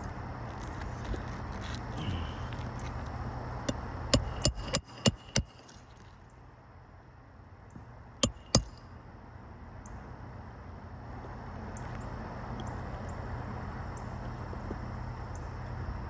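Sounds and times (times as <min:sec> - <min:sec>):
hammer blows on shingle roof: 0:03.6 - 0:05.7, 0:08.2 - 0:08.8.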